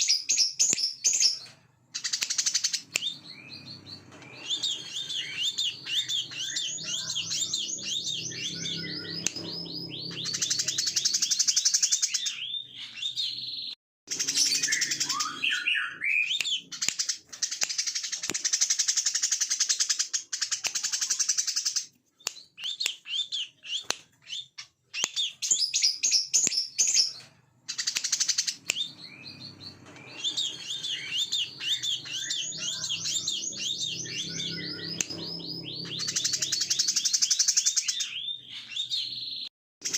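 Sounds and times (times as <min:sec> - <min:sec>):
bird singing with buzzing trills: 0:02.4 - 0:13.5, 0:14.1 - 0:16.8, 0:27.8 - 0:39.9.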